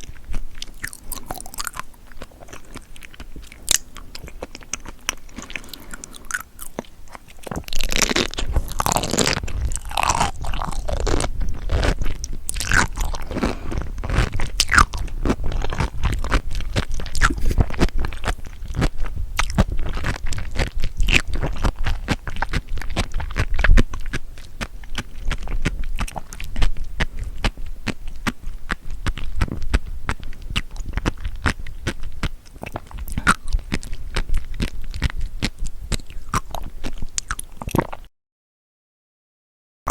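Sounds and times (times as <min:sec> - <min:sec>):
crunchy chewing: 0:00.0 - 0:38.1.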